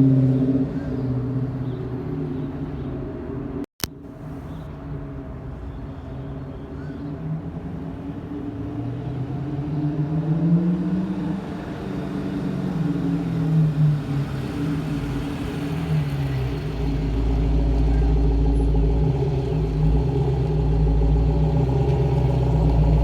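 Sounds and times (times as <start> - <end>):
lumpy car engine revving: 10.0 - 23.0.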